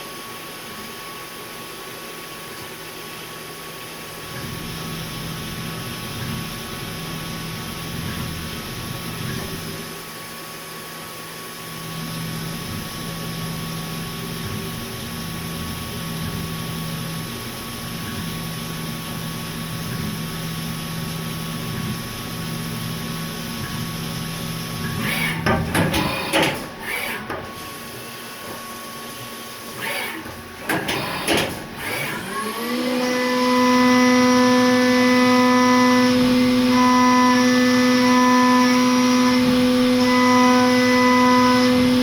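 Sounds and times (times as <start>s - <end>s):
milling machine humming: 11.6s - 42.0s.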